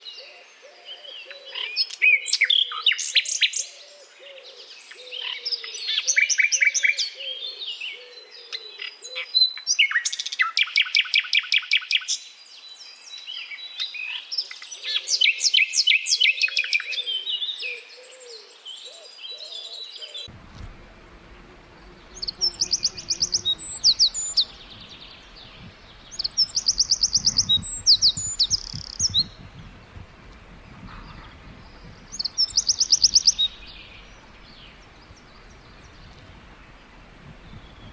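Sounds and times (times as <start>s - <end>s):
softer lower bird call: 20.0s - 37.9s
birds singing high notes: 20.5s - 30.3s, 31.3s - 37.9s.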